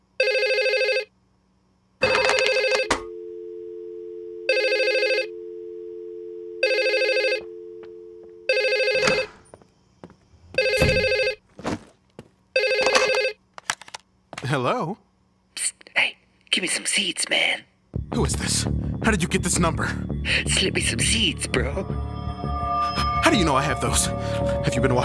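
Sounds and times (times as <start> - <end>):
telephone ringing: 0.2 - 1.1, 2.0 - 9.3, 10.6 - 11.4, 12.6 - 13.4
steady low tone: 18.0 - 25.0.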